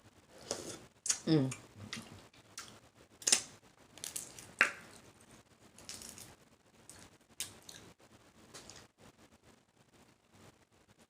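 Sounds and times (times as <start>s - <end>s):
shellfish shells cracking: 2.6s - 5.0s, 5.8s - 6.3s.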